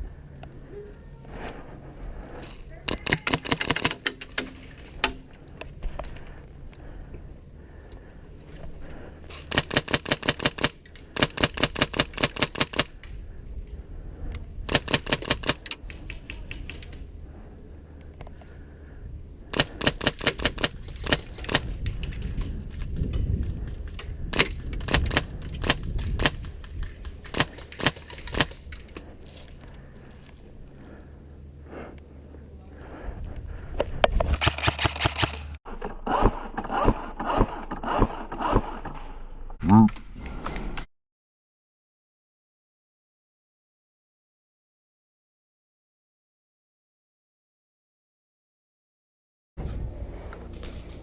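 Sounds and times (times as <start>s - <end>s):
airsoft guns firing: 2.9s - 4.6s, 9.4s - 12.9s, 19.5s - 21.7s.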